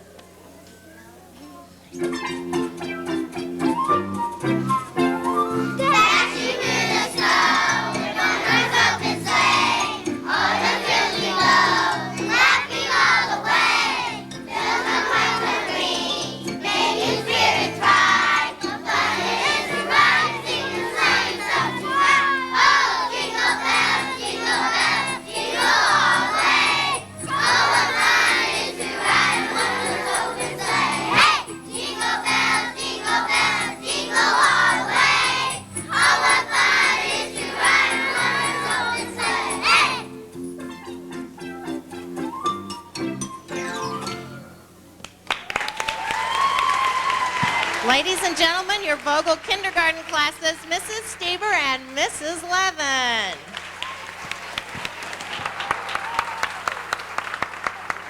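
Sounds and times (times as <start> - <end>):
instrumental accompaniment: 1.8 - 45.2
children singing together: 5.8 - 40.1.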